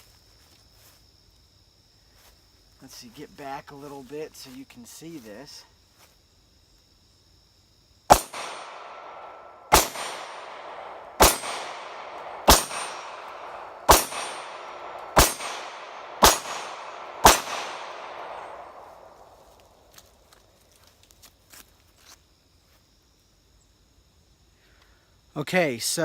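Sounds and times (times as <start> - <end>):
pistol shots with echo: 8.1 - 19.3.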